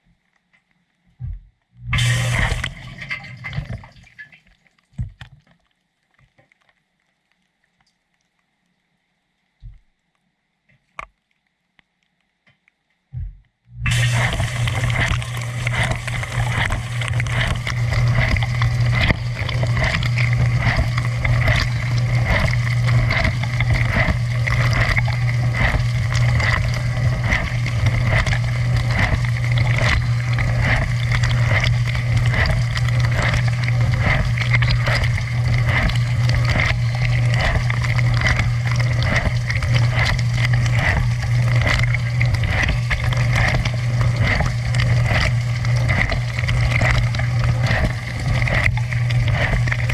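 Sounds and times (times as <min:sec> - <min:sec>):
dishwasher pump humming: 0:01.8 - 0:04.2, 0:13.8 - 0:49.9
water spraying and splashing: 0:02.0 - 0:04.2, 0:13.9 - 0:49.9.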